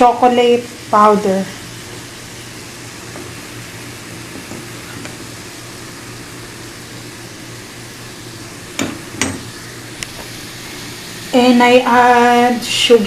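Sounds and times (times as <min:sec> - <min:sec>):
low kitchen hum: 0:00.0 - 0:13.0.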